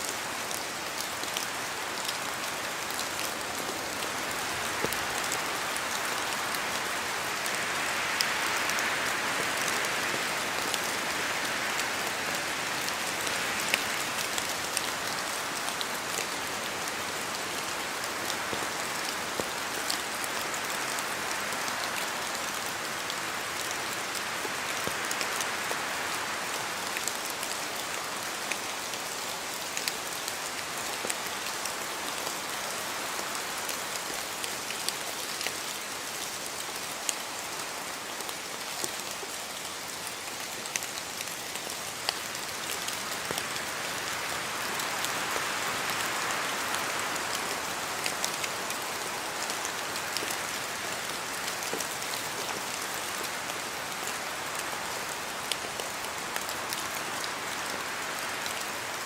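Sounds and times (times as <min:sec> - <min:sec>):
steady rain hiss: 0:00.0 - 0:59.0.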